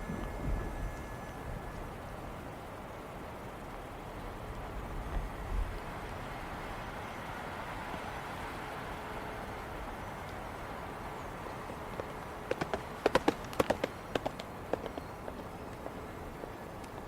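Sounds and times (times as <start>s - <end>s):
steady rushing noise: 0.0s - 17.0s.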